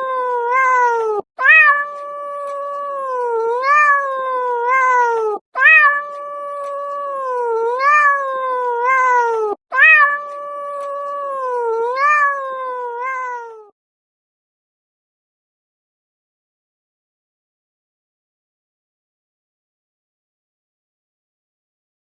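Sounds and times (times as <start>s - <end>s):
cat yowling: 0.0s - 13.7s.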